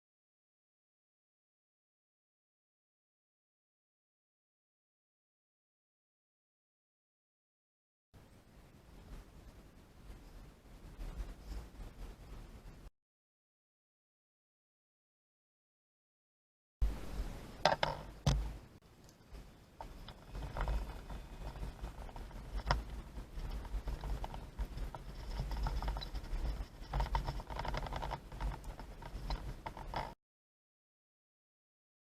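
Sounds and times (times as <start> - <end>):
low rumble: 16.8 - 29.8
rustling handling noise: 17.1 - 30.2
clicks and knocks: 17.6 - 18.6.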